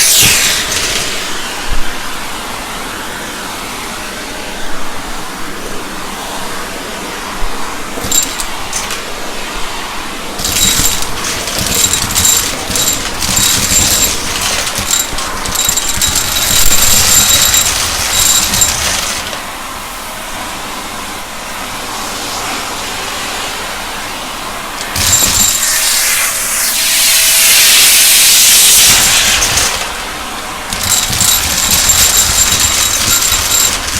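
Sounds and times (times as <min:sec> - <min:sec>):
vacuum cleaner running: 0:00.0 - 0:33.9
debris crackling and rattling: 0:08.0 - 0:09.1, 0:10.4 - 0:19.5, 0:24.8 - 0:26.0, 0:28.8 - 0:33.9.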